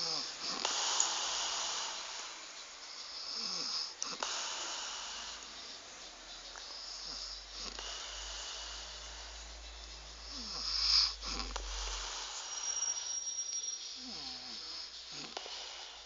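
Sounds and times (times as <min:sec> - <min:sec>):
man snoring: 0:00.0 - 0:02.4, 0:03.0 - 0:05.5, 0:06.6 - 0:09.4, 0:10.2 - 0:12.7, 0:14.0 - 0:16.0
breaths puffed through lips: 0:00.0 - 0:16.0.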